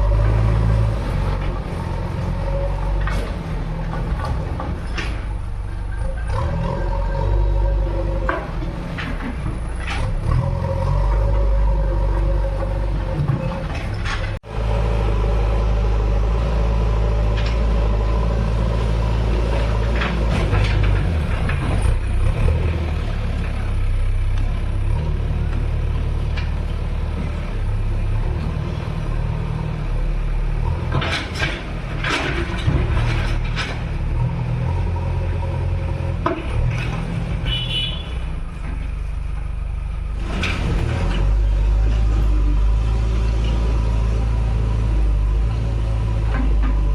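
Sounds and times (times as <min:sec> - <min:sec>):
backhoe diesel engine running: 0:00.0 - 0:46.9
clanks and rattles: 0:02.7 - 0:06.8, 0:08.0 - 0:11.4, 0:12.0 - 0:14.4, 0:19.4 - 0:23.7, 0:30.7 - 0:34.4, 0:38.4 - 0:42.2.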